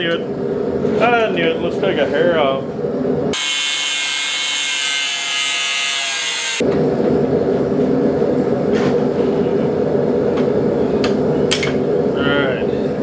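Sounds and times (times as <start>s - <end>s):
angle grinder grinding steel: 3.4s - 6.6s.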